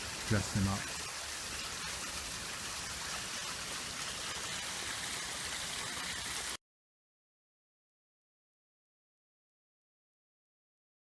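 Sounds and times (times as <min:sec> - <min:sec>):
water running over waterfall: 0:00.0 - 0:06.6.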